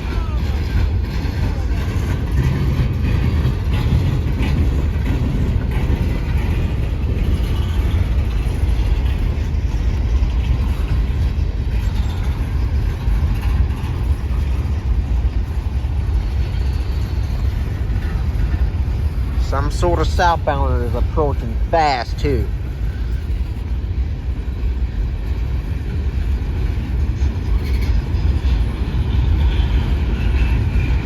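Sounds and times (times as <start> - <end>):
train wheels rumbling on rail: 0.0 - 31.0.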